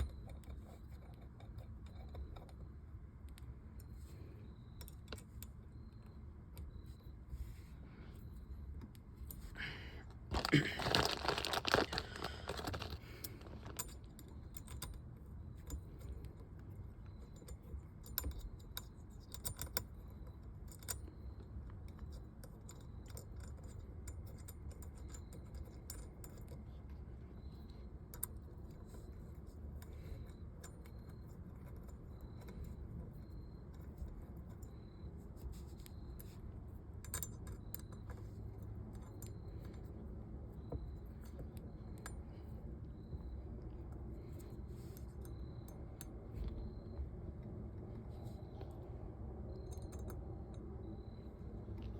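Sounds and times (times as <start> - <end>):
metal parts and tools clinking: 10.1 - 21.1.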